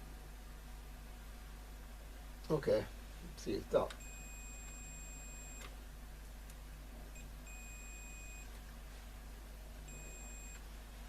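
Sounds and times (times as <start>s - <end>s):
multimeter continuity beeps: 4.0s - 5.7s, 7.2s - 8.5s, 9.9s - 10.6s.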